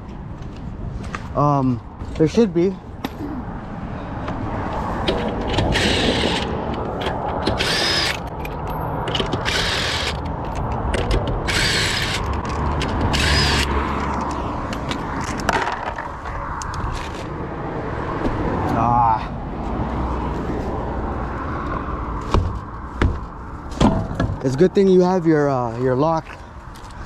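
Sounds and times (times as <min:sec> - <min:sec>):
impact wrench bursts on lug nuts: 0:05.1 - 0:13.7.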